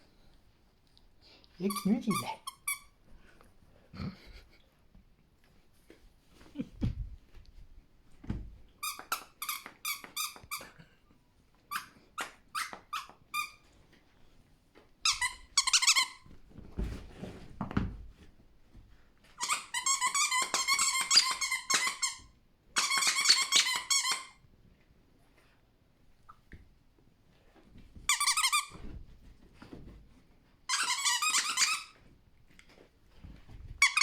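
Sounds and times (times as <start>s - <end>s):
squeaky toy squeaking: 1.7s - 3.0s, 15.1s - 16.2s, 19.4s - 22.2s, 22.8s - 24.4s, 28.1s - 28.8s, 30.7s - 32.0s, 33.8s - 34.0s
rustling: 15.5s - 21.4s.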